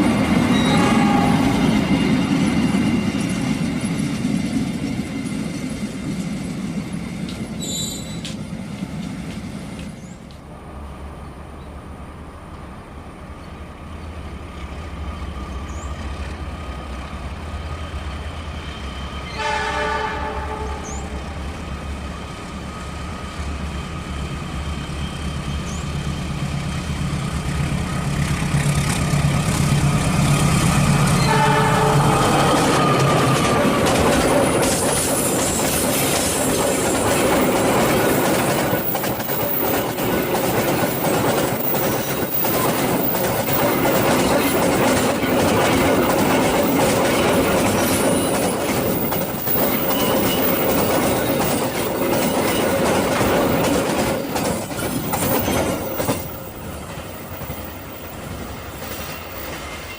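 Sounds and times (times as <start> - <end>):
passing train: 0.0 - 59.9
locomotive horn blast: 0.5 - 1.7, 19.3 - 21.3, 31.2 - 33.4.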